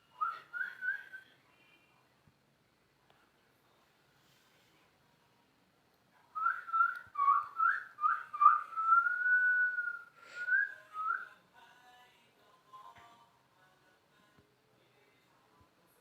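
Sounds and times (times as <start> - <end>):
person whistling: 6.4 - 11.2.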